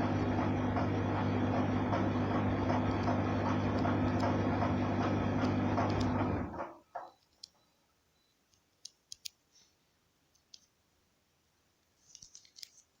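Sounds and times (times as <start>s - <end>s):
faint clicks and taps: 8.5s - 9.7s, 10.3s - 10.8s, 11.8s - 13.0s.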